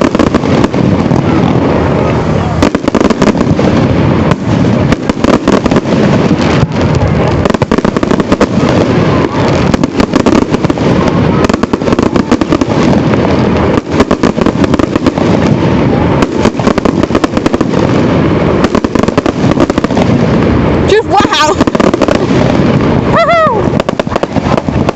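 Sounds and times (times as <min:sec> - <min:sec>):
fireworks bangs and crackles: 0:00.0 - 0:24.9.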